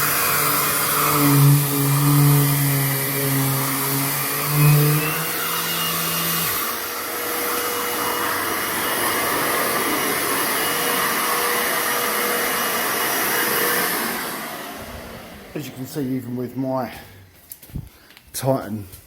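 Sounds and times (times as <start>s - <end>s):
orbital sander humming: 0.0s - 15.7s
vacuum rushing: 3.7s - 15.9s.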